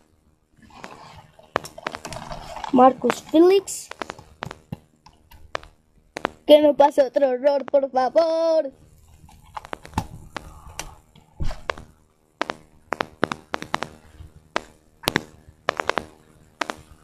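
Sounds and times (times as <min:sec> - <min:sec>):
irregular taps and knocks: 0:03.9 - 0:06.4, 0:09.5 - 0:14.0, 0:14.6 - 0:16.8.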